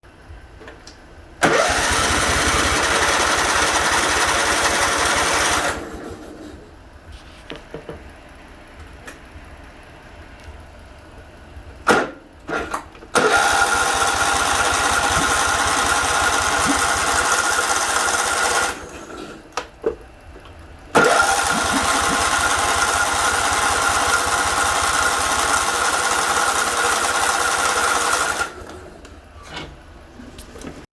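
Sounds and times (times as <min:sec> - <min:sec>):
engine cranking with starter whine: 0:01.2 - 0:06.8, 0:11.8 - 0:19.8, 0:20.9 - 0:30.4.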